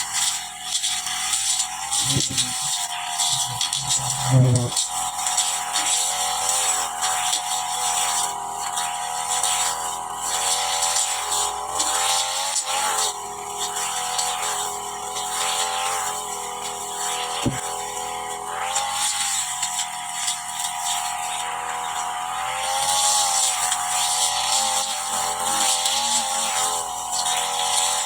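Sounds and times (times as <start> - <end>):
brush cutter engine cutting grass: 0.0 - 28.0.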